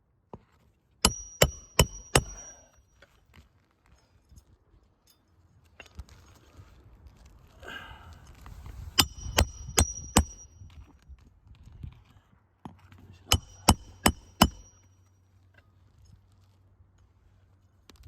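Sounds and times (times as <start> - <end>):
hammer striking metal tool: 1.0 - 2.6, 9.0 - 10.6, 13.3 - 14.8.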